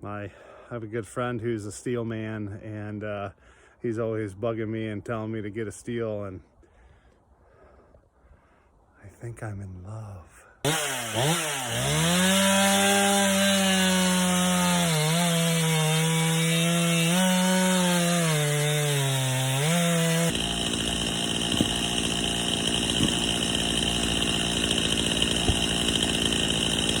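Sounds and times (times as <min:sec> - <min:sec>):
chainsaw cutting a log: 0:10.6 - 0:27.0.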